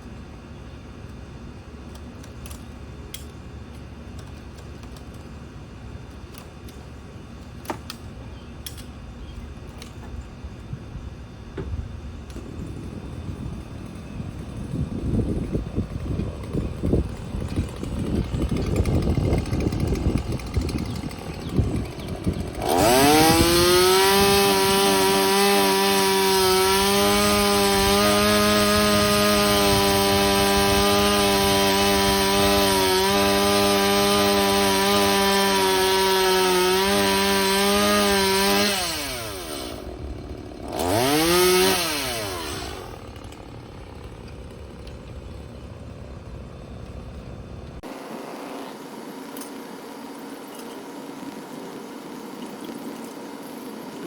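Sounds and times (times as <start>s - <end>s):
chainsaw cutting wood: 12.4s - 45.9s, 47.7s - 54.0s.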